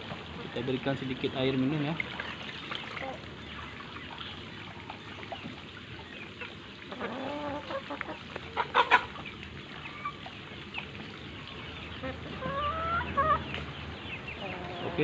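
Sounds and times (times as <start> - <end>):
chicken clucking: 6.1 - 11.0, 11.8 - 15.0.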